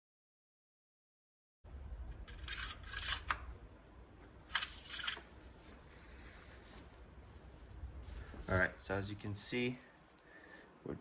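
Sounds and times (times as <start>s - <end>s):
low steady hum: 1.7s - 11.0s
scraping rustling handling noises: 4.5s - 8.8s.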